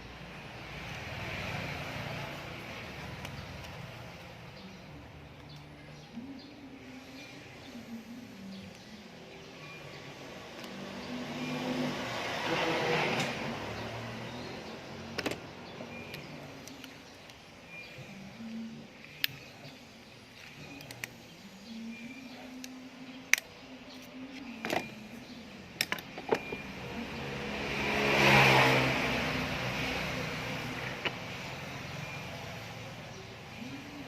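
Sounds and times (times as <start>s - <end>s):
vehicle passing by: 0.0s - 4.8s, 9.4s - 17.0s, 25.0s - 34.0s.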